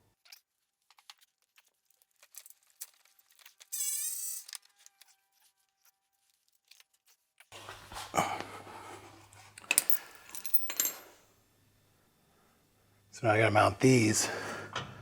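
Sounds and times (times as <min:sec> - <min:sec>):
metal tools clinking and rattling: 0:09.6 - 0:11.1.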